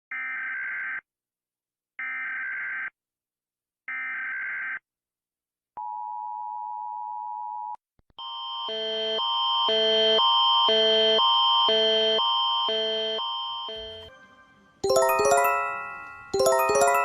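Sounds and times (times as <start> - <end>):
alarm tone: 8.2 - 14.2, 14.8 - 17.0
two-tone attention signal: 13.7 - 14.2.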